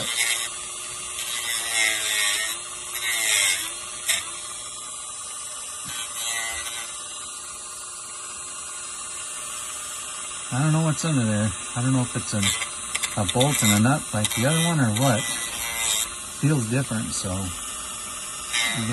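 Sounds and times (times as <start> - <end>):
grinding rasp cutting rubber: 0.0 - 18.9
rotary tool high whine: 0.0 - 18.9.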